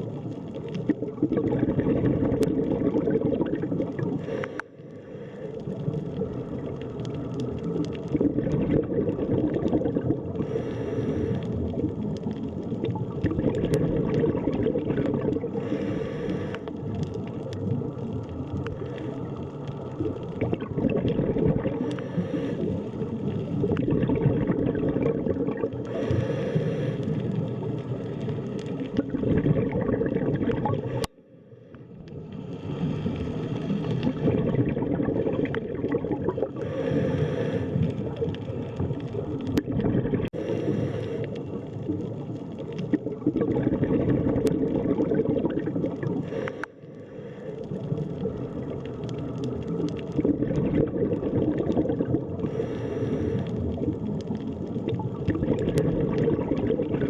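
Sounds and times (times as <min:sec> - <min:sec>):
underwater rush and bubbling: 0:00.0 - 0:57.0.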